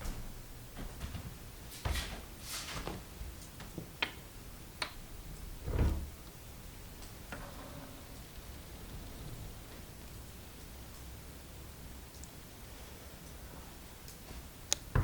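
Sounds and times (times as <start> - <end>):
heavy thump: 5.6 - 6.2.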